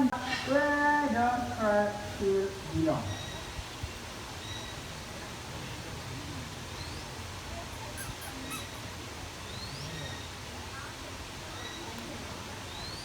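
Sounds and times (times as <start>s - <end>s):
outdoor background noise: 0.0s - 13.0s
bird whistles and chirps: 8.0s - 8.8s.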